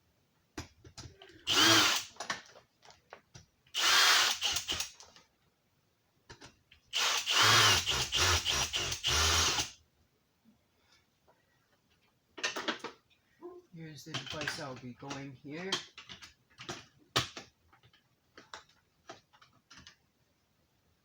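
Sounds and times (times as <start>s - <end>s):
power drill driving screws: 1.5s - 2.2s, 3.8s - 5.0s, 6.9s - 9.7s.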